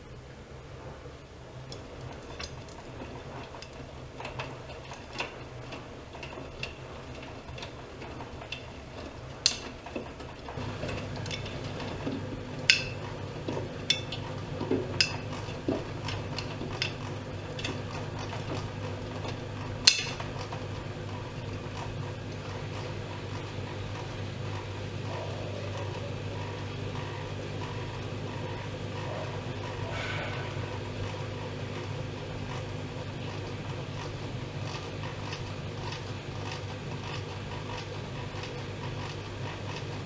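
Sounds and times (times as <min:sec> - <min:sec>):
washing machine running: 0:00.0 - 0:40.0
light clinks and clicks: 0:01.7 - 0:07.8, 0:10.6 - 0:18.6.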